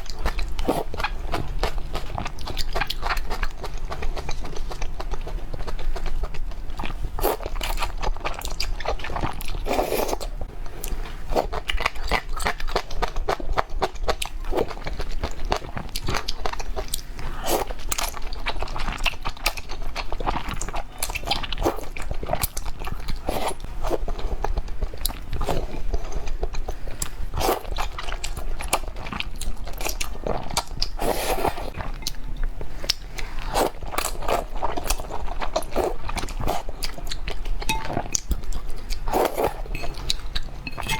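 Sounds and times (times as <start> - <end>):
person chewing crunchy food: 0.0 - 40.9.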